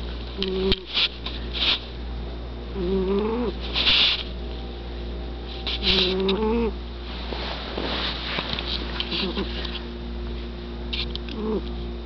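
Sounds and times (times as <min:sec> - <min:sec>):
cat snoring: 0:02.8 - 0:03.6, 0:06.0 - 0:06.7.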